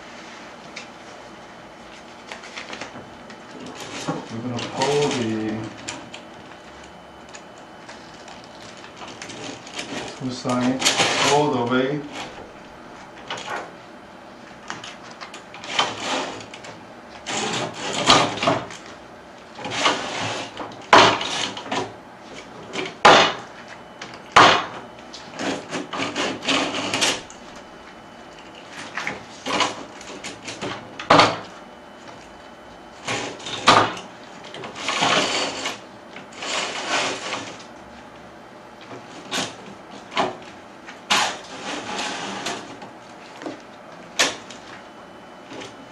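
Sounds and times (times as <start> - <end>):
curtain carriers sliding on track: 36.4 - 37.5, 41.1 - 42.6.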